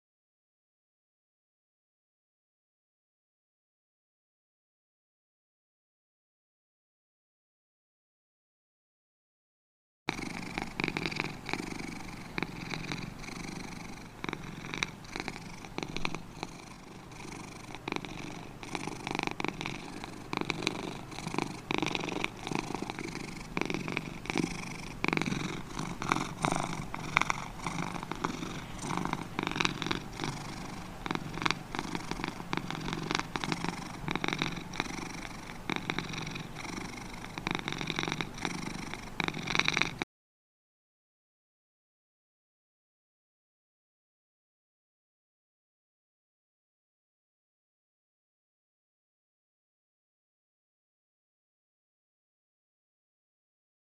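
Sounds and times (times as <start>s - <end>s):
kitten snoring: 10.1s - 40.1s.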